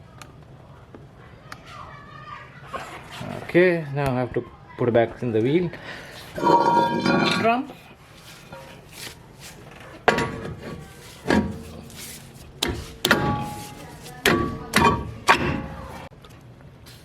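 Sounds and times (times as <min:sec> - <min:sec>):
metal knocks on brake drum: 0:10.1 - 0:11.8, 0:12.6 - 0:16.1.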